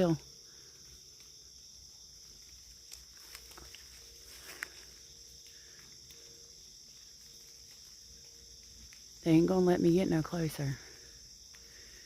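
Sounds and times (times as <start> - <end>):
high insect chorus: 0.0 - 12.0
faint clicks: 2.5 - 4.8.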